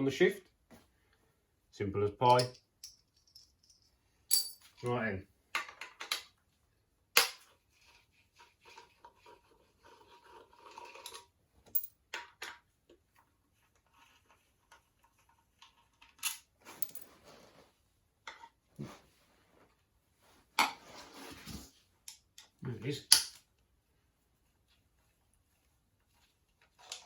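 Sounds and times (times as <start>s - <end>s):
hand tools and metal parts clattering: 2.2s - 4.9s, 16.0s - 17.4s.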